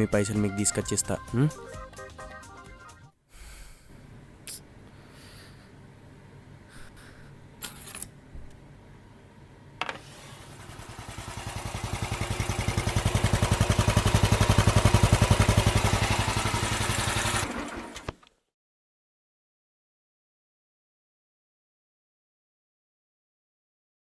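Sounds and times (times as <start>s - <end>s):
motorcycle engine running: 10.4s - 18.0s.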